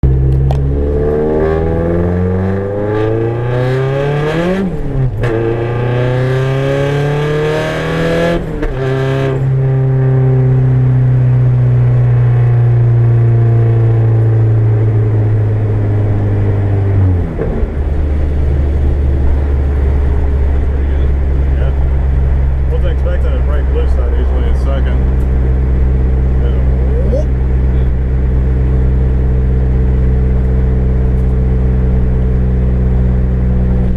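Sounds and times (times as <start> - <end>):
turbocharged car engine revving: 0.0 - 9.5.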